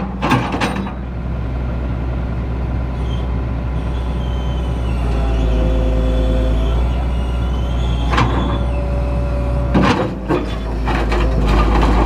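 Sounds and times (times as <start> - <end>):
excavator diesel engine running: 0.0 - 12.0
hydraulic whine: 2.9 - 12.0.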